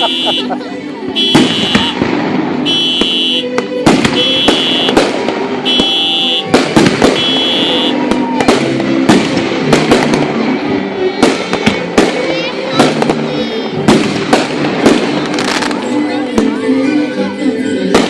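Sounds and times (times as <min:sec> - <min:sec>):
fireworks bangs and crackles: 0:01.1 - 0:16.6.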